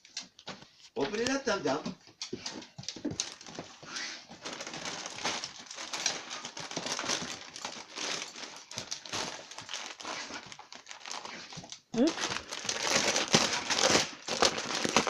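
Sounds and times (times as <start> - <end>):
wrapping paper crinkling: 3.0 - 15.0.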